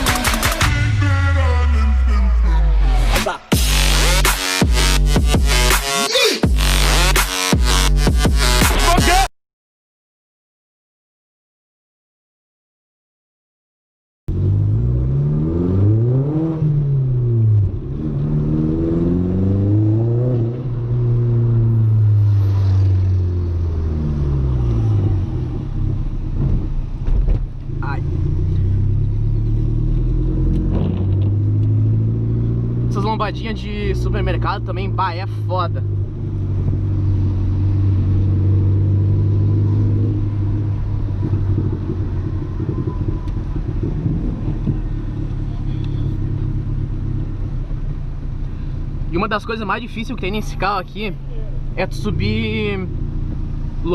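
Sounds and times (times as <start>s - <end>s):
car engine accelerating: 14.3s - 53.9s.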